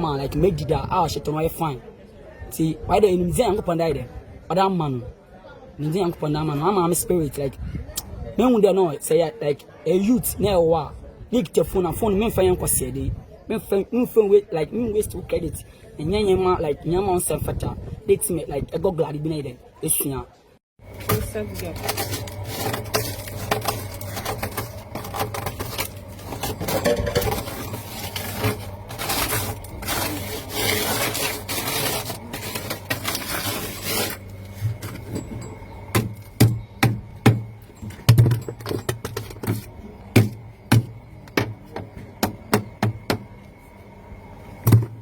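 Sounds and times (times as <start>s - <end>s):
steady low hum: 20.8s - 45.0s
rough scraping and rubbing: 20.9s - 36.4s
sharp irregular knocks: 35.9s - 39.5s.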